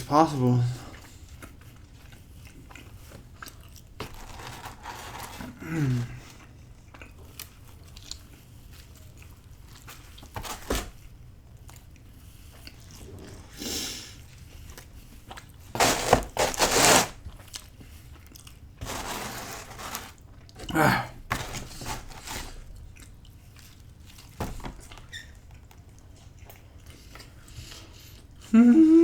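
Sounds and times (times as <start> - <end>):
person chewing: 0.9 - 4.6, 11.0 - 28.5.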